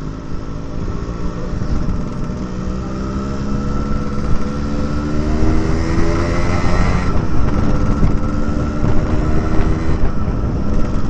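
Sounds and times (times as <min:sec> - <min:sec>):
motorcycle engine rising pitch: 0:00.0 - 0:11.0.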